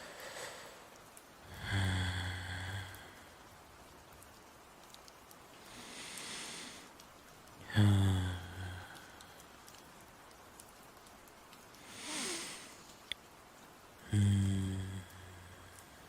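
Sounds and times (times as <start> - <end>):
hissing breath: 0.0 - 0.9, 5.6 - 6.9, 11.8 - 12.9.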